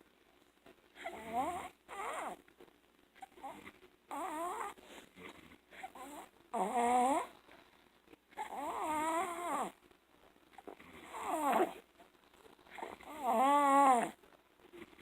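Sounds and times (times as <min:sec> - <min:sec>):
toddler snoring loudly: 0:01.0 - 0:02.4, 0:03.3 - 0:04.8, 0:05.8 - 0:07.4, 0:08.4 - 0:09.8, 0:11.0 - 0:11.8, 0:12.7 - 0:14.2.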